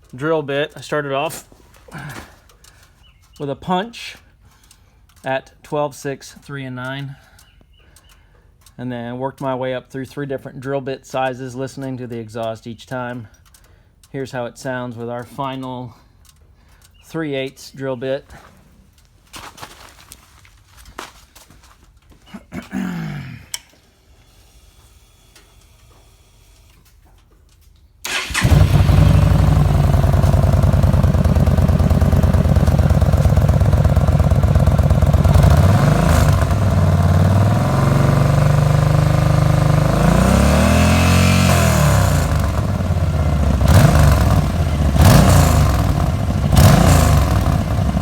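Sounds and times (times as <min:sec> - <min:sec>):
motorcycle engine starting and revving: 0:25.5 - 0:48.0.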